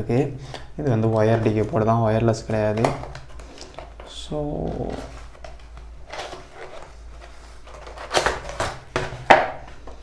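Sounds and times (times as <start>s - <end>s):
cardboard box rustling: 4.6s - 9.3s.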